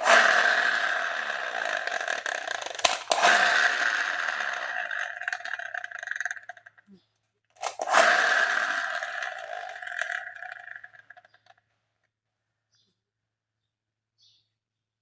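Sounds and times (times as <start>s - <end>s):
toy gun click: 0.0s - 6.6s, 7.6s - 11.3s.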